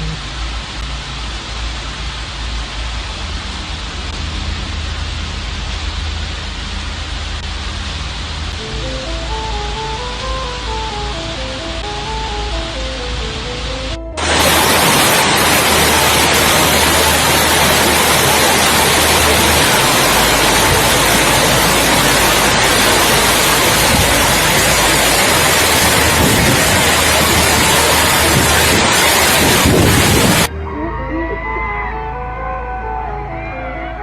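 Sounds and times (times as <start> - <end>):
torrential rain pouring: 0.0 - 30.5.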